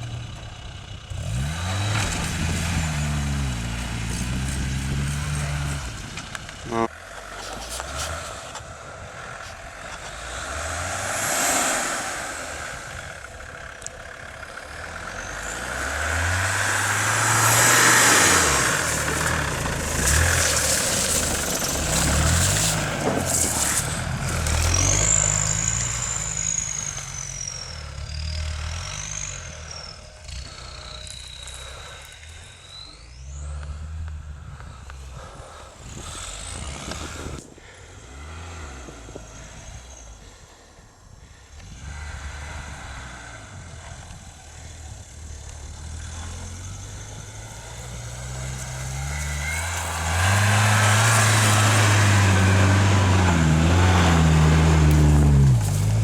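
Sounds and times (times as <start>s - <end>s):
off-road engine revving: 0.0s - 56.0s
high gliding whistling tone: 15.0s - 34.0s.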